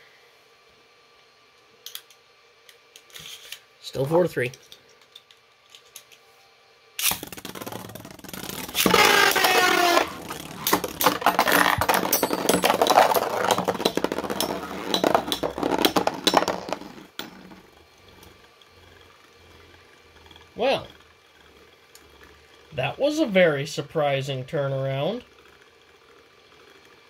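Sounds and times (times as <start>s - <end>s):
spinning tops clattering: 7.0s - 18.5s
spinning tops whining: 7.0s - 27.0s.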